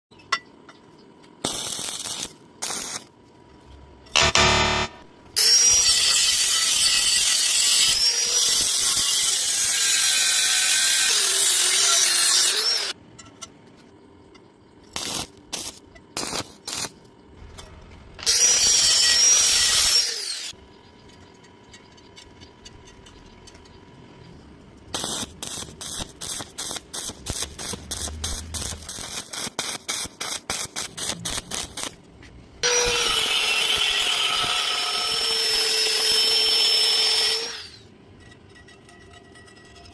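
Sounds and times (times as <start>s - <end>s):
metalworking power tools whining: 4.2s - 13.0s, 17.4s - 20.6s, 32.6s - 37.9s.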